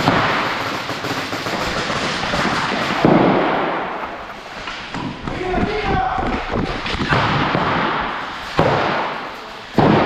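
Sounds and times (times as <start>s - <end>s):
airsoft guns firing rapidly: 0.0s - 4.4s, 6.0s - 10.0s
loud bang: 6.2s - 10.0s.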